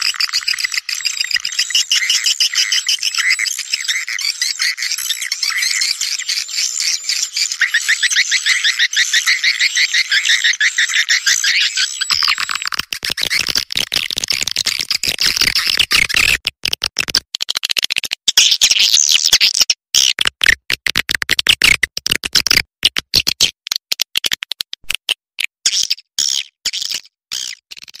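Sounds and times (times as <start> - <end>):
recorded swiftlet calls: 0.0 - 16.5, 25.7 - 28.0.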